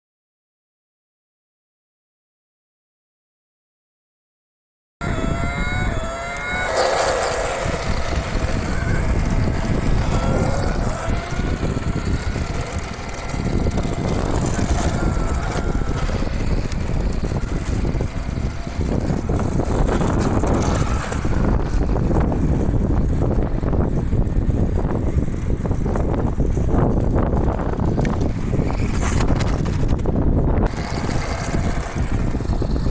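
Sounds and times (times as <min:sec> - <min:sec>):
steady rough noise: 0:05.0 - 0:32.9
toy car motor whine: 0:05.0 - 0:32.9.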